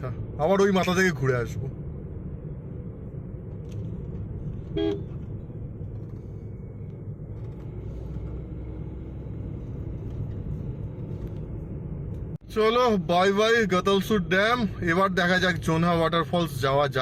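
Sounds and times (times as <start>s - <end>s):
car engine and road rumble: 0.0s - 17.0s
car horn toot: 4.7s - 5.2s.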